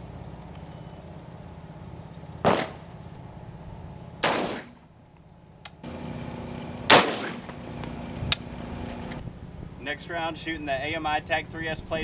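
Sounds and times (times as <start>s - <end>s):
rifle shots: 2.4s - 2.9s, 4.2s - 4.8s, 6.9s - 8.0s.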